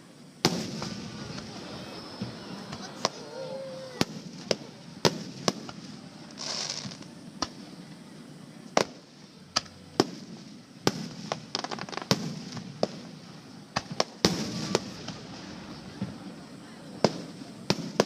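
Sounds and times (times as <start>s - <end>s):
firework hiss: 0.0s - 18.0s
firework shells bursting: 4.0s - 7.6s.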